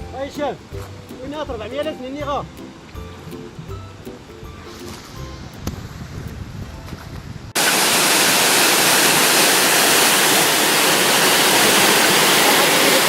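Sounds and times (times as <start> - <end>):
waterfall roaring: 7.6 - 13.0.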